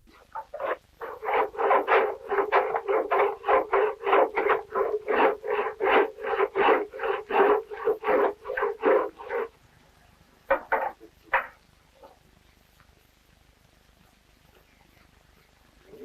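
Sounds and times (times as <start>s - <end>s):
steel scraping on wood: 0.1s - 9.6s, 10.5s - 11.5s.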